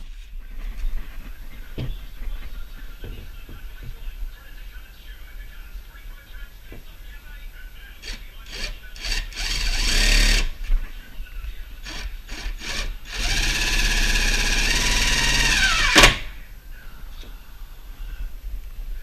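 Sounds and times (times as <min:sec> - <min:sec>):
power drill boring: 0:08.5 - 0:10.5, 0:11.9 - 0:16.3.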